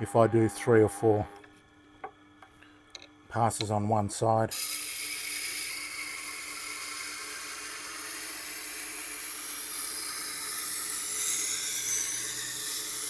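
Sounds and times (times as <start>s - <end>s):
grinder motor hum: 0.0s - 2.2s, 4.5s - 13.0s
knife grinding on wheel: 4.5s - 13.0s.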